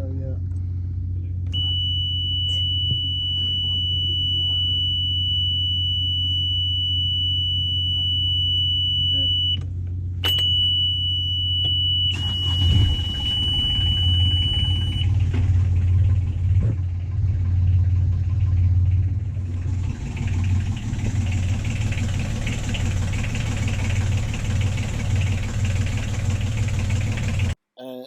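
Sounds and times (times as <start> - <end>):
engine droning: 0.0 - 10.6, 11.6 - 27.6
high beeping alarm tone: 1.6 - 9.6, 10.2 - 15.2.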